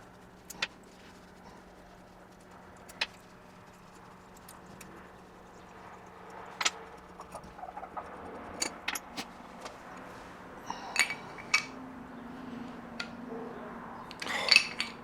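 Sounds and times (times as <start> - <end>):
faint steady hum: 0.0 - 15.0
metal parts clicking and knocking: 2.3 - 9.3, 10.9 - 11.8, 14.1 - 15.0.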